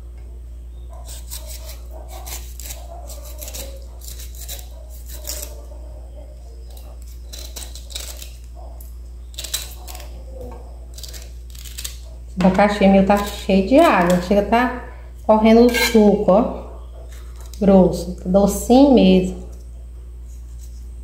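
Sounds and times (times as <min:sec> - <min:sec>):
steady low hum: 0:00.0 - 0:21.0
knife slicing pineapple rind: 0:01.0 - 0:05.8, 0:06.6 - 0:14.4, 0:15.6 - 0:16.2.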